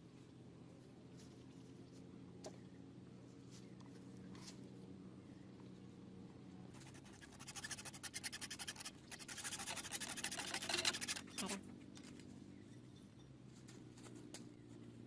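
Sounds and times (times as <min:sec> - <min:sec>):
rapid rhythmic scraping: 0:06.8 - 0:11.6.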